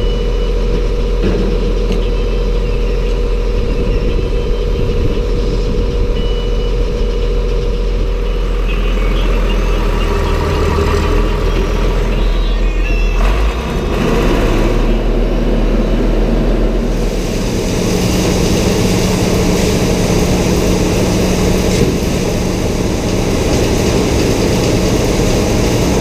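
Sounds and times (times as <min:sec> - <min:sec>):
feed grinder machine drone: 0:00.0 - 0:26.0.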